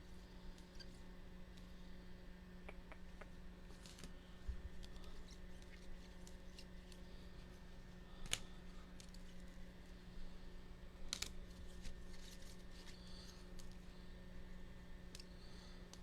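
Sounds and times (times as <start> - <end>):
faint steady hum: 0.0 - 16.0
cards clicking and tapping: 2.7 - 4.1.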